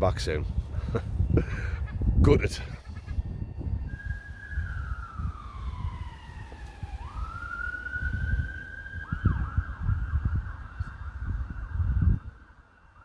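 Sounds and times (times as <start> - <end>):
emergency siren wailing: 0.6 - 13.0.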